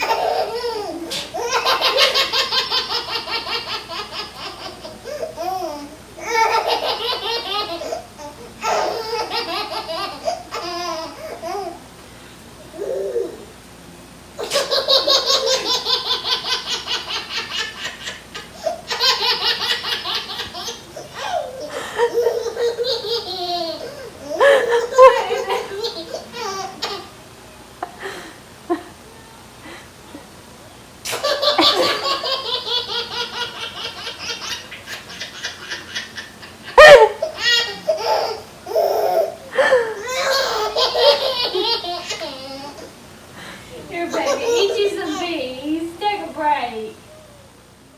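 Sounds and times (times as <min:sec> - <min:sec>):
baby laughing: 0:00.0 - 0:11.8, 0:14.4 - 0:27.1, 0:31.1 - 0:42.9, 0:44.0 - 0:45.3.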